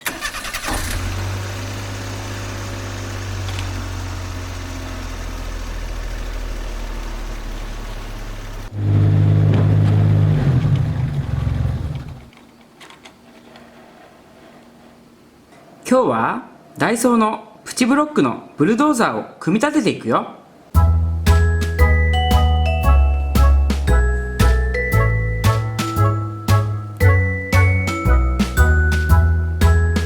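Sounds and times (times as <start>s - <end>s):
loud rough engine: 0.7s - 12.3s
engine running steadily: 0.9s - 12.3s.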